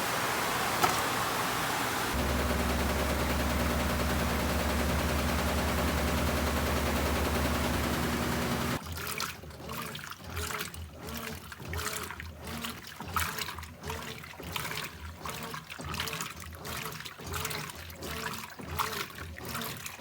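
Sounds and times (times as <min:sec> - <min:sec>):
washing machine motor hum: 0:00.0 - 0:08.8
water rushing in: 0:00.0 - 0:08.8.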